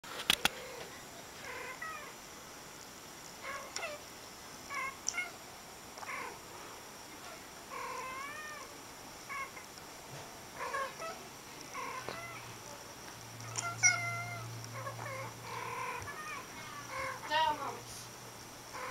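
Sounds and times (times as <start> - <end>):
cats meowing and chirping: 0.5 - 2.2, 3.4 - 4.0, 4.7 - 5.4, 7.2 - 8.7, 9.3 - 9.6, 10.6 - 12.5, 13.4 - 17.6.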